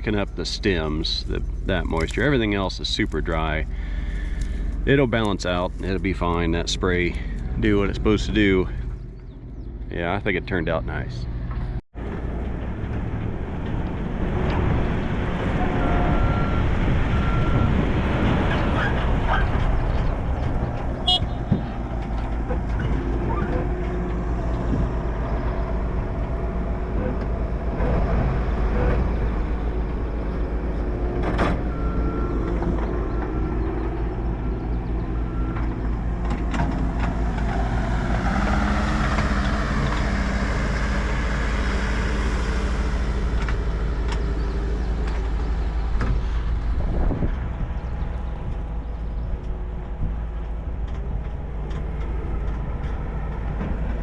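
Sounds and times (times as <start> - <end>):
tractor engine running: 0.0 - 54.0
machinery knocks and clatter: 11.4 - 54.0.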